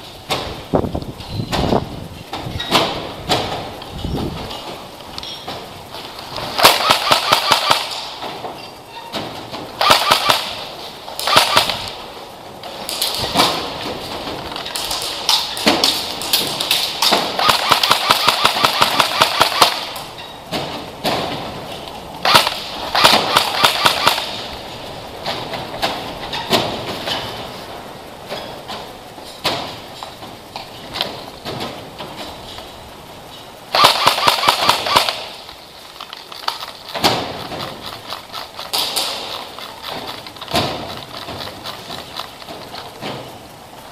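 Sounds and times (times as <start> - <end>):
airsoft guns firing bursts: 6.3 - 8.2, 9.7 - 12.1, 14.7 - 20.1, 22.2 - 24.8, 33.7 - 42.8.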